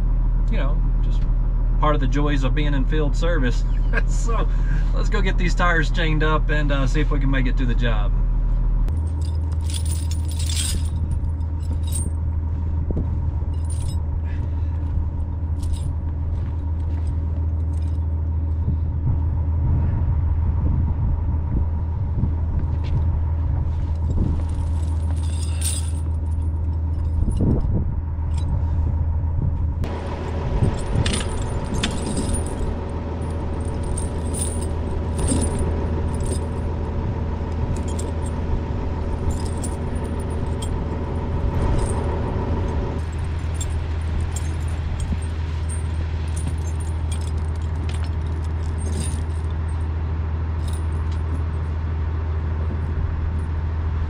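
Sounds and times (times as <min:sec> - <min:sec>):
vehicle engine idling: 0:00.0 - 0:54.0
metal tire chains clinking: 0:08.9 - 0:12.4, 0:13.5 - 0:18.5, 0:23.8 - 0:28.5, 0:29.8 - 0:50.0, 0:50.6 - 0:51.8.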